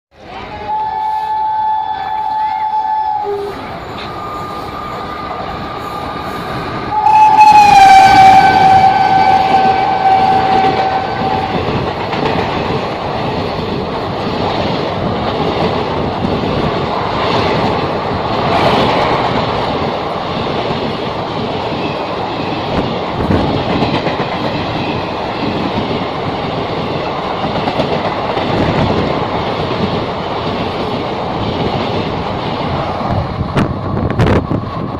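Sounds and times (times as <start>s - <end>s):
locomotive horn blast: 6.9s - 11.8s.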